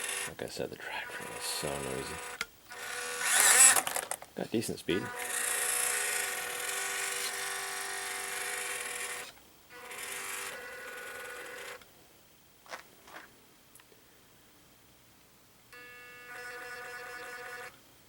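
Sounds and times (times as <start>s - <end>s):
toy car electric motor whining: 0.0s - 0.3s, 1.1s - 4.2s, 5.0s - 11.8s, 15.8s - 17.8s.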